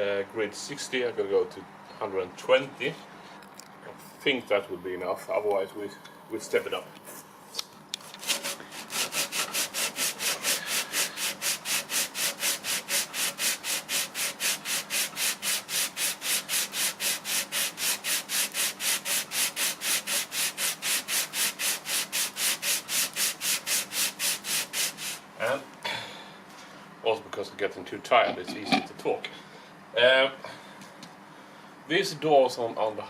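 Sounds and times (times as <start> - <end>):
sandpaper rubbing on wood: 8.2 - 25.2.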